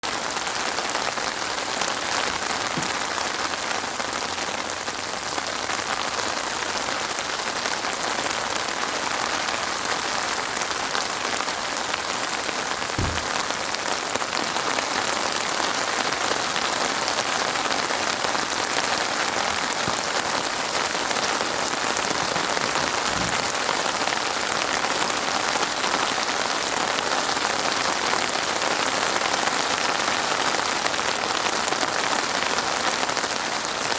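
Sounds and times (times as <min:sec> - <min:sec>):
rain pattering on surfaces: 0:00.0 - 0:33.9
low thumps: 0:13.0 - 0:13.7.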